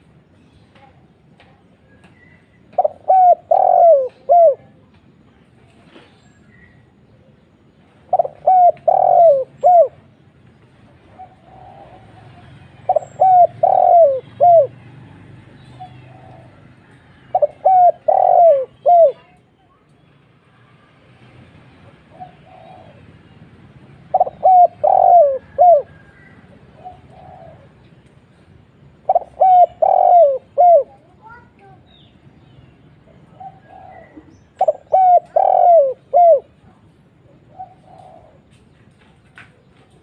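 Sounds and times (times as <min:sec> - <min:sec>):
dove cooing: 0:02.7 - 0:04.8, 0:08.0 - 0:10.1, 0:11.1 - 0:14.8, 0:15.7 - 0:19.4, 0:22.0 - 0:23.2, 0:23.9 - 0:27.9, 0:28.9 - 0:31.4, 0:33.3 - 0:36.7, 0:37.3 - 0:38.6.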